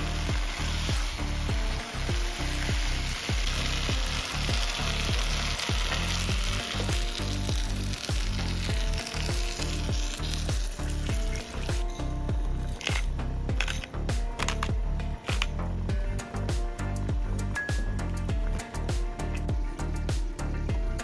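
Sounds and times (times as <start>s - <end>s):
food sizzling in a pan: 0.0s - 13.1s
background music with beat: 0.0s - 21.0s.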